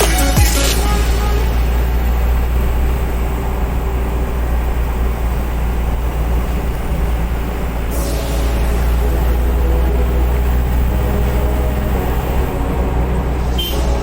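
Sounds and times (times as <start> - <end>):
electronic music: 0.0 - 2.5, 7.9 - 14.0
heavy diesel machinery rumbling: 0.0 - 14.0.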